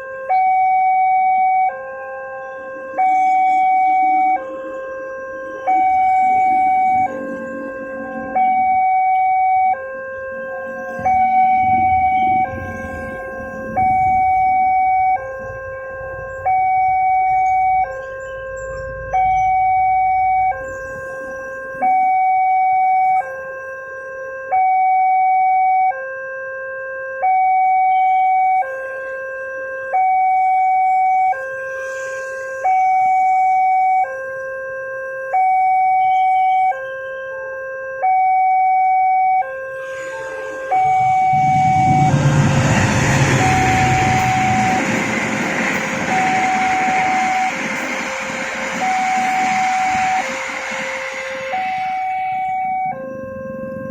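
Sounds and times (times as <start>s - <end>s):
two-tone level crossing alarm: 0.0s - 53.9s
approaching train: 1.8s - 23.4s, 39.6s - 53.9s.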